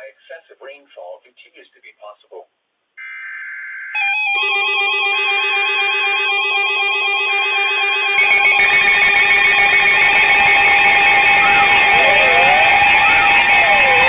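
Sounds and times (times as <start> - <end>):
electronic alarm tones: 3.0 - 14.0.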